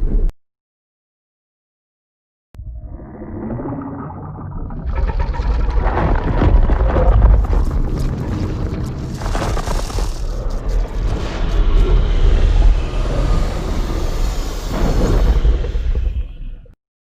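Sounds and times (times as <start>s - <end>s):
deep rumble into harsh blast: 10.8s - 16.7s.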